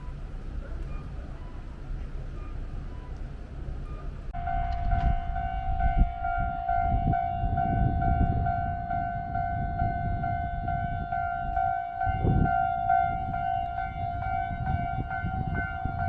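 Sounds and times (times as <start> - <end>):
level crossing warning bell ringing: 0.0 - 16.0
low rumble: 4.3 - 16.0.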